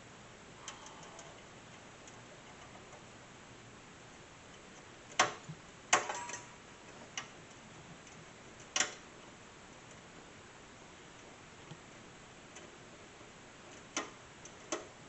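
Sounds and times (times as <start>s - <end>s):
metallic clicks and clinks: 5.9s - 6.5s.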